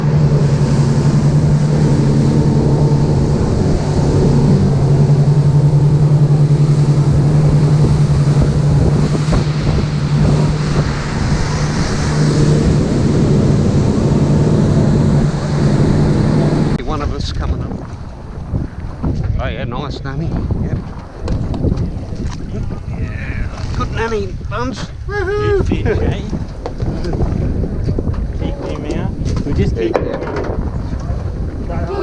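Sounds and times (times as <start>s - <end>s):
boat motor droning: 0.0s - 16.9s
water noise: 0.0s - 19.2s, 20.7s - 25.1s
wind buffeting microphone: 0.0s - 32.0s.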